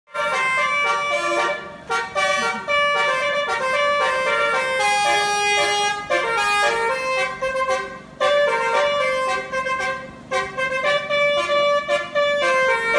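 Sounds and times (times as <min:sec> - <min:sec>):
musical bus horn melody: 0:00.1 - 0:12.9.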